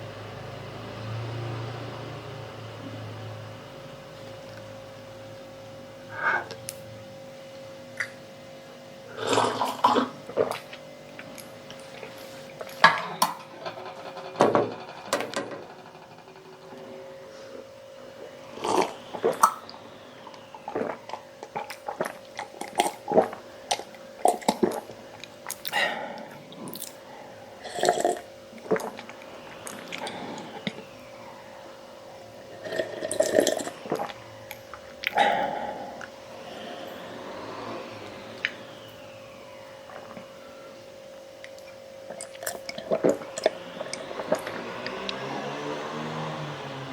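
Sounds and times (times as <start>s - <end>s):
person gulping milk: 9.1s - 11.4s, 20.7s - 24.9s.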